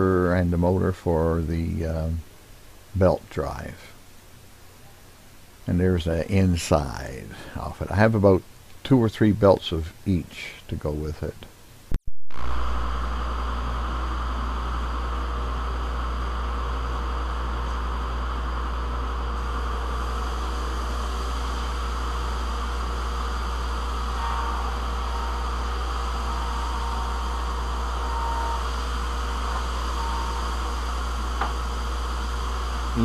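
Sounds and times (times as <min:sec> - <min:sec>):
faint machine whine: 0:00.0 - 0:33.0
dust collection air rushing: 0:12.4 - 0:33.0
belt sander humming: 0:12.6 - 0:33.0.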